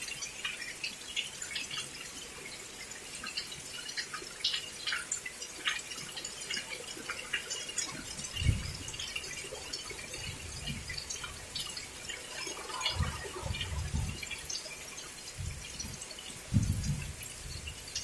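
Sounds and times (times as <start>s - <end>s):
heavy rain dripping: 0.0s - 18.0s
wind buffeting microphone: 8.2s - 9.0s, 10.1s - 14.6s, 15.2s - 18.0s.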